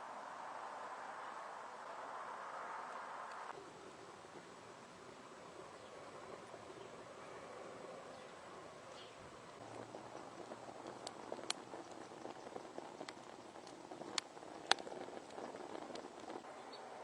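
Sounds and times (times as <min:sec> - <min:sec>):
wood fire crackling and popping: 0:09.3 - 0:16.5.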